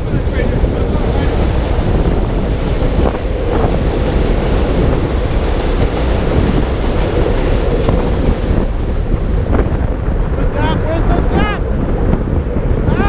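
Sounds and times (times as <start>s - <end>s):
wind rushing on microphone: 0.0s - 13.0s.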